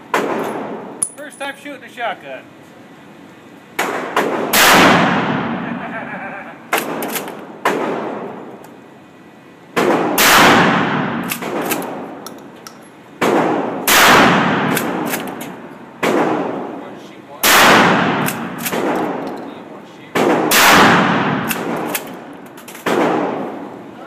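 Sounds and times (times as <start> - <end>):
shotgun blasts with echo: 3.8 - 5.7, 9.8 - 12.0, 13.2 - 15.4, 16.0 - 16.8, 17.4 - 19.2, 20.1 - 22.1, 22.8 - 23.6.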